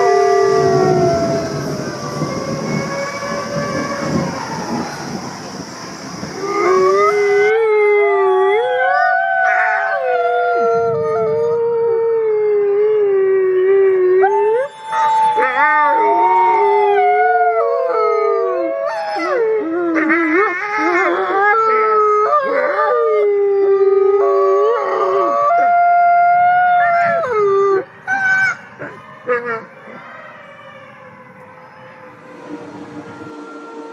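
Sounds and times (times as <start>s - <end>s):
rushing noise: 0.0s - 7.5s, 31.6s - 33.9s
wolves howling: 0.0s - 33.9s.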